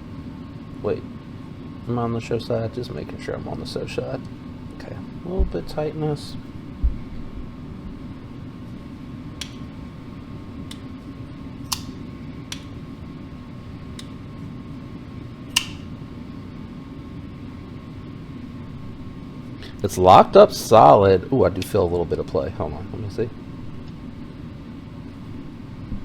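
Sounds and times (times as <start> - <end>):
fan hum: 0.0 - 26.0
folding knife blade clicks: 15.5 - 15.9.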